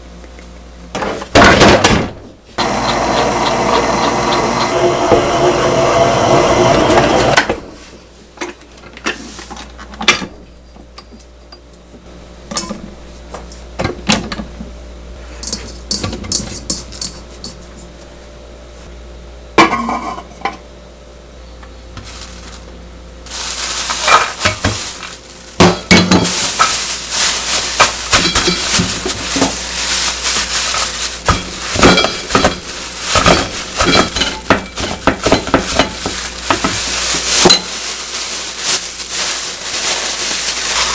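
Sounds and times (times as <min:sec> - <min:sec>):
utensils clinking on pots: 0:25.6 - 0:38.2.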